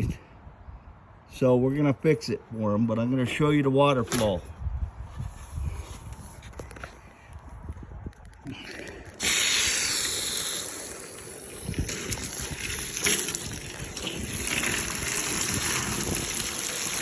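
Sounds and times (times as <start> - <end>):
water spraying onto gutter: 9.2 - 17.0.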